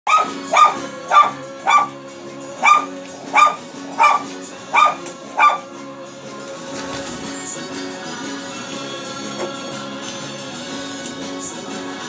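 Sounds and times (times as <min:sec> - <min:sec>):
dog barking: 0:00.0 - 0:02.0, 0:02.6 - 0:05.7
background music: 0:00.0 - 0:12.0.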